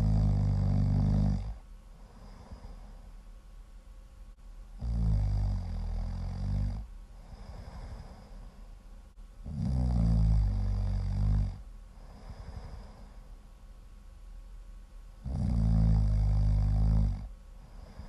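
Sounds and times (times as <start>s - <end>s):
loud rumbling snoring: 0.0s - 2.8s, 4.8s - 8.4s, 9.4s - 13.1s, 15.2s - 18.0s
soft breathing: 0.0s - 3.4s, 7.1s - 8.9s, 11.9s - 13.6s, 17.5s - 18.0s.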